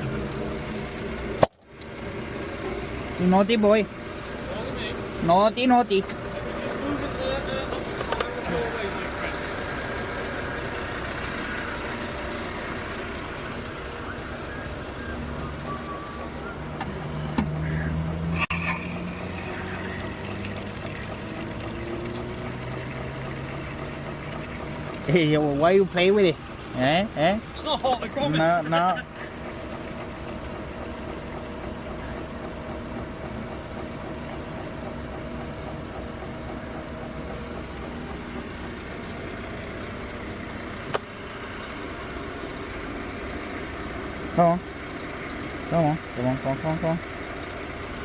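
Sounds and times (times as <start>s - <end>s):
vehicle engine idling: 0.0s - 48.0s.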